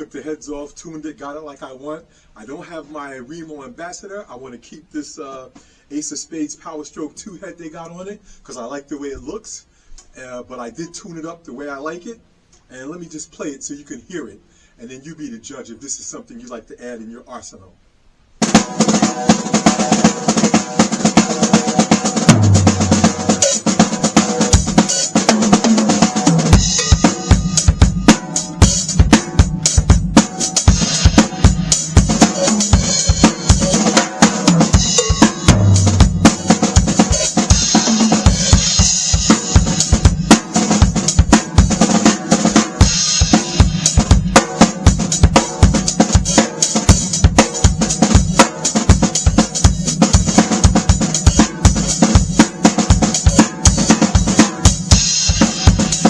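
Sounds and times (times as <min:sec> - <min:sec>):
drum kit playing fast patterns: 0:18.4 - 0:56.0
snare drum: 0:18.4 - 0:56.0.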